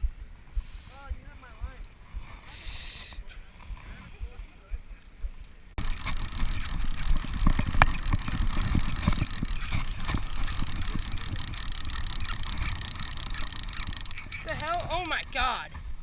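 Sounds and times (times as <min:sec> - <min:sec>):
fine clicks: 0:03.1 - 0:15.7.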